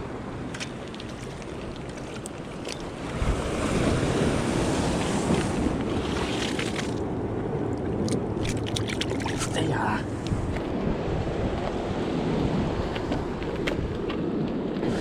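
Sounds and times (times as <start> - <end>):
wind buffeting microphone: 0.0 - 6.4, 7.0 - 15.0
sea waves washing against rocks: 0.0 - 11.1.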